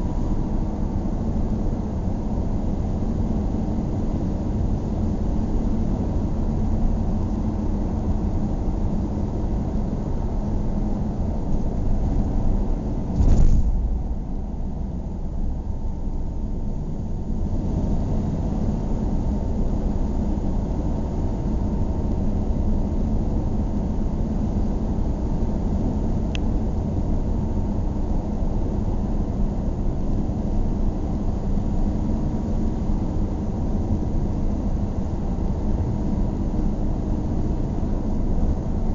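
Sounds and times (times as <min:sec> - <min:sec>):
car engine and tyre rumble: 0:00.0 - 0:38.9
thump: 0:13.1 - 0:14.0.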